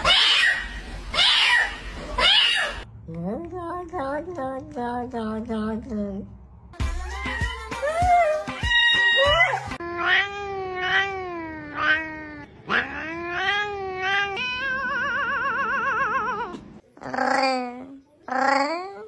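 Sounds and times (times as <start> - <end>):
cat yowling: 0.0 - 0.6, 1.2 - 2.8, 7.2 - 17.5.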